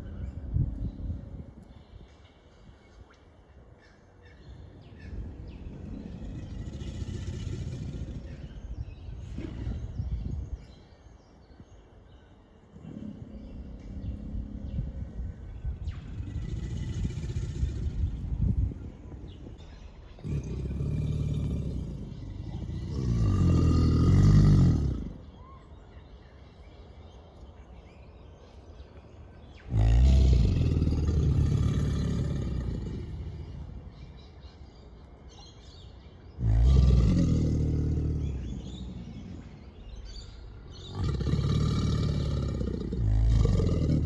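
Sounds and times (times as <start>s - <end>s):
alligators bellowing: 29.7s - 34.2s, 36.4s - 44.0s.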